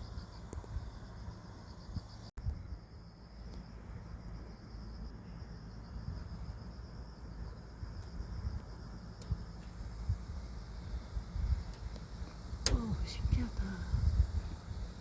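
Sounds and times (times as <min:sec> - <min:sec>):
crickets chirring: 0:00.0 - 0:15.0
faint clicks: 0:11.6 - 0:12.9.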